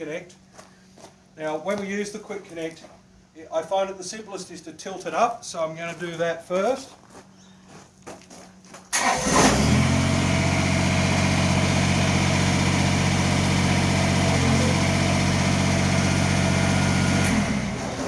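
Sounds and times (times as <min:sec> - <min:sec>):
diesel engine starting and idling: 0:08.9 - 0:18.0.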